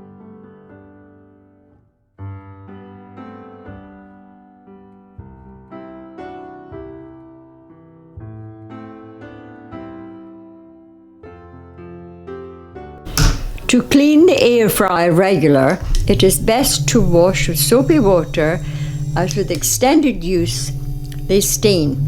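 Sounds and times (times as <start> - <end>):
piano chords: 13.1 - 22.0.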